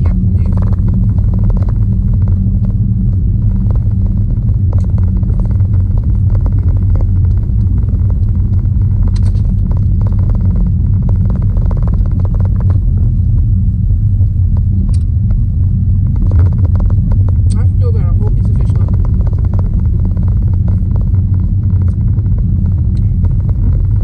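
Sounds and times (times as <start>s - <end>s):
car engine idling: 0.0s - 24.0s.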